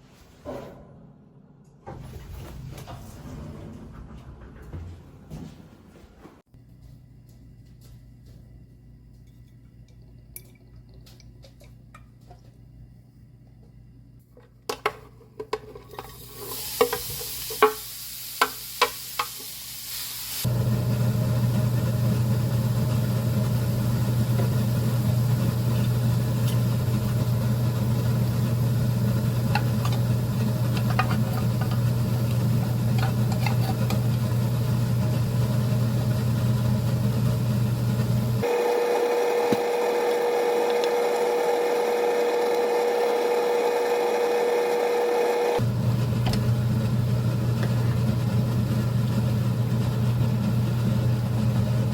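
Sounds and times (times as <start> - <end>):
food sizzling: 16.0 - 51.9
loud steady hiss with hum: 16.3 - 38.4
utensils clicking and knocking: 30.7 - 31.9, 32.9 - 34.0.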